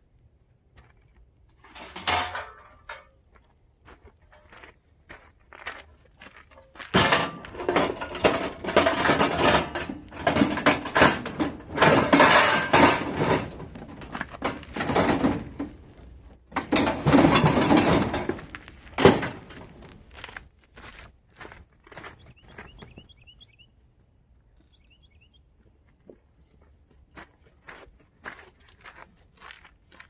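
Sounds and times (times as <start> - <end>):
scrap metal rattling: 1.6 - 3.1, 6.8 - 20.2.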